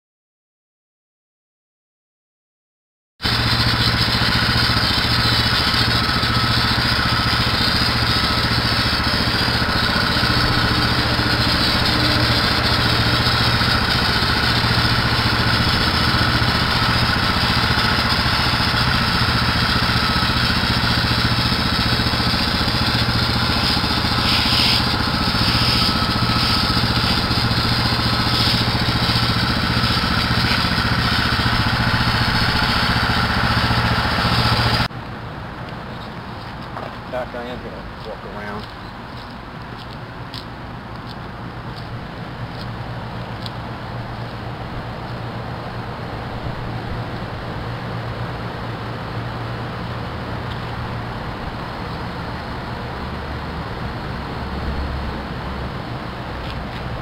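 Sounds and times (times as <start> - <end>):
small engine running: 3.2 - 34.9, 35.9 - 57.0
brief hissing surges: 23.6 - 28.9.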